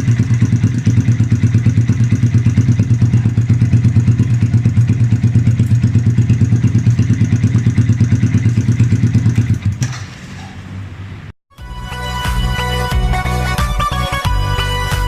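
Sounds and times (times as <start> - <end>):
motorcycle engine idling: 0.0 - 10.8
music: 11.5 - 15.0.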